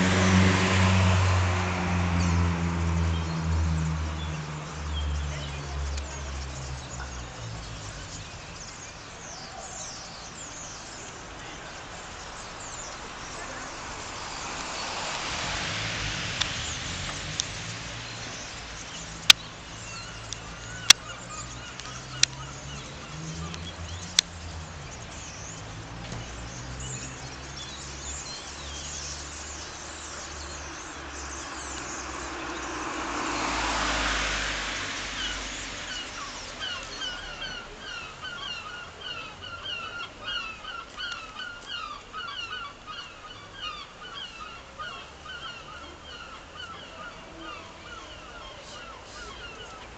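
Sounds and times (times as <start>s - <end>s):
flock of birds calling: 0.0s - 49.9s
rush of noise: 11.5s - 37.9s.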